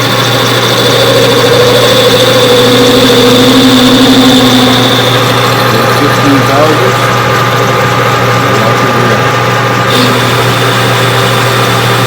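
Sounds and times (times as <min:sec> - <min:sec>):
high singing cutting tones: 0:00.0 - 0:08.4
metal lathe motor hum: 0:00.0 - 0:12.0.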